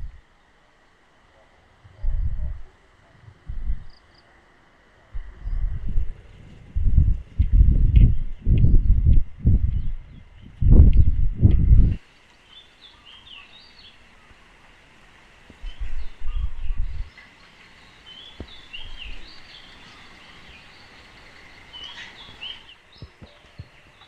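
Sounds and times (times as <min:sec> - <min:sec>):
rural outdoor ambience: 0:00.0 - 0:24.0
birds chirping: 0:07.4 - 0:14.6, 0:15.5 - 0:24.0.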